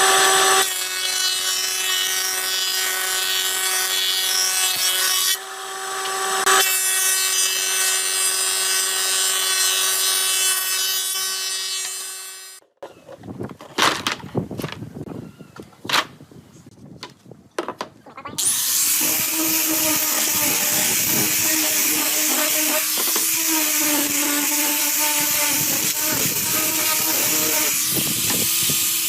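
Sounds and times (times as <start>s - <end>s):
electric power tool hum: 0.0s - 12.6s, 18.4s - 29.0s
wood knocks and scrapes: 12.8s - 14.9s, 15.6s - 18.4s, 22.3s - 23.3s.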